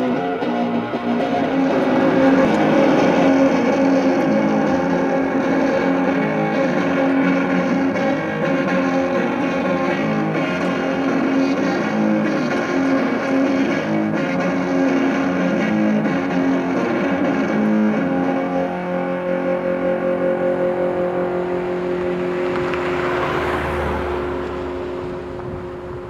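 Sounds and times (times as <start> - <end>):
electric guitar music: 0.0 - 26.0.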